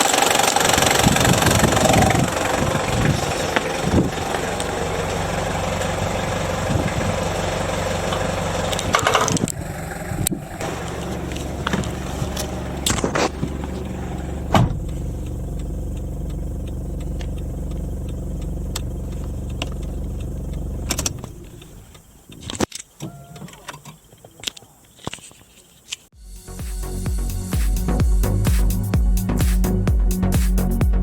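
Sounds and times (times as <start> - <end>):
diesel engine idling: 0.0 - 22.2.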